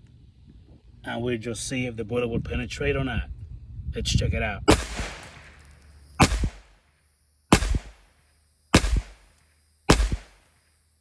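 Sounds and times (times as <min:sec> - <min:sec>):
pistol shots with ringing echo: 0:04.7 - 0:06.8, 0:07.5 - 0:09.3, 0:09.9 - 0:10.5.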